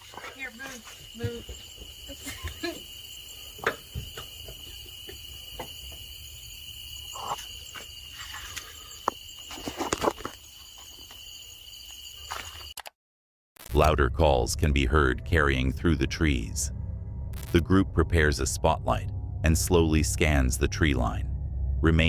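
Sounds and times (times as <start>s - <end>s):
high-pitched drone: 13.7s - 22.0s.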